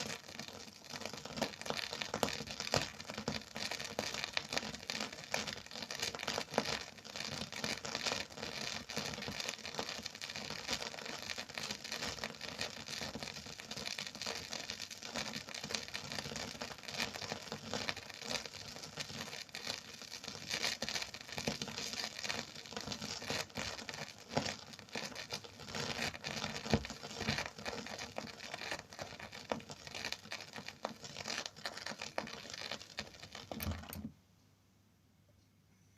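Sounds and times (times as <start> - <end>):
record crackle and hiss: 0.0 - 34.6
record pops: 14.1 - 34.2.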